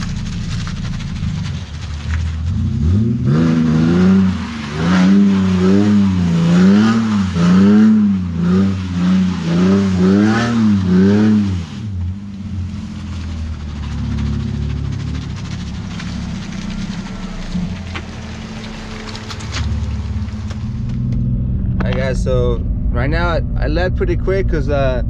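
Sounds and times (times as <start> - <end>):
car engine revving: 0.0 - 25.0.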